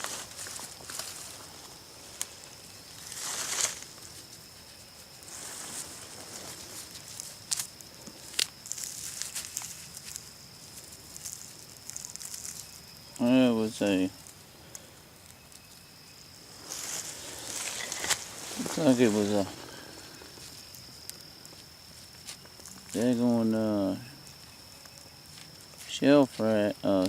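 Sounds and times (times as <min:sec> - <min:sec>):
dirt rustling and scraping: 0:00.0 - 0:27.0.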